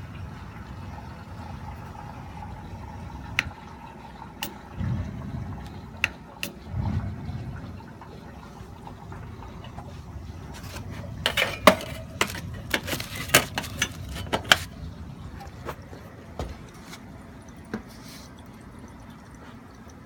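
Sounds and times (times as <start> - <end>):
hard objects clinking: 10.6 - 14.7.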